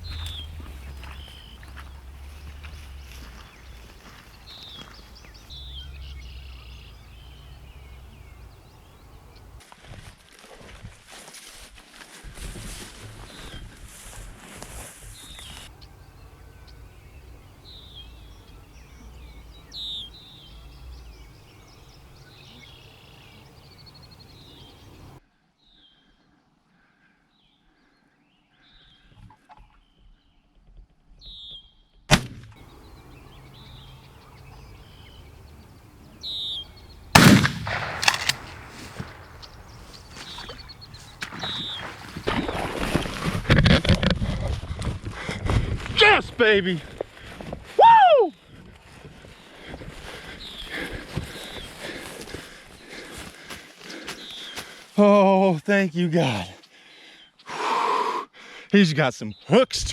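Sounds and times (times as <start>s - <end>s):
songbirds singing: 0.0s - 9.6s, 15.0s - 26.0s, 32.6s - 43.0s, 48.3s - 57.6s, 58.8s - 59.9s
shotgun blast: 32.1s - 32.5s, 37.1s - 39.9s
sharp crack: 32.1s - 32.8s, 37.1s - 42.5s.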